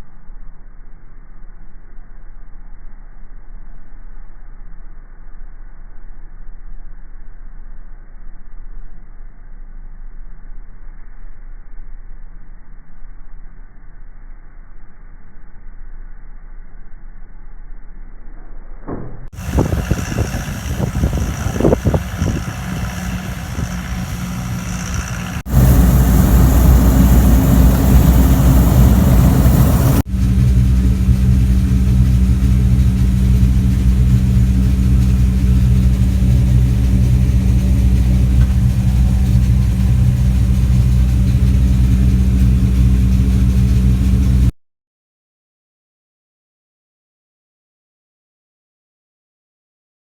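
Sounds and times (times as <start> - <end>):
farm machinery engine running: 19.4 - 44.5.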